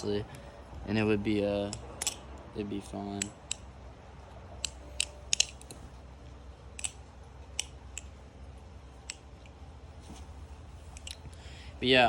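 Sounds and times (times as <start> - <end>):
butterfly knife clicking and tapping: 4.6 - 5.8.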